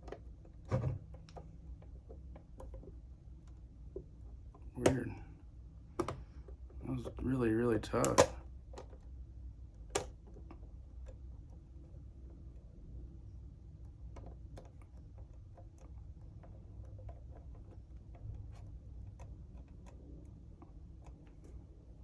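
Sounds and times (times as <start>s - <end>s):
low steady hum: 0.0s - 22.0s
plastic model parts clicking: 7.9s - 8.4s.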